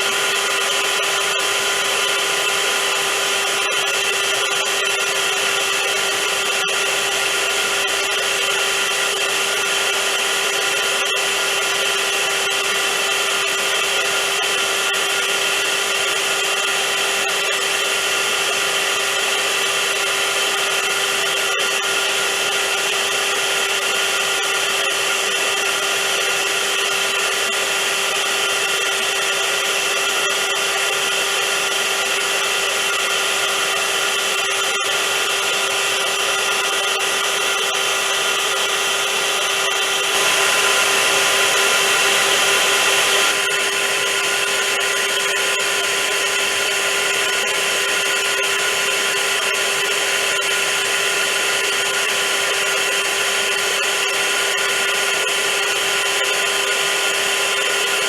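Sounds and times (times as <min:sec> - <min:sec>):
vacuum cleaner running: 0:00.0 - 0:58.0.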